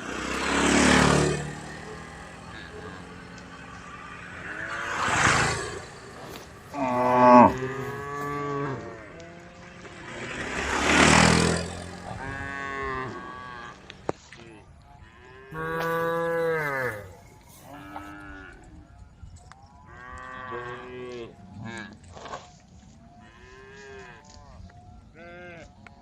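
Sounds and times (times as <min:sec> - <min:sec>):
cattle mooing: 0:00.3 - 0:14.0, 0:15.1 - 0:18.6, 0:19.9 - 0:21.9.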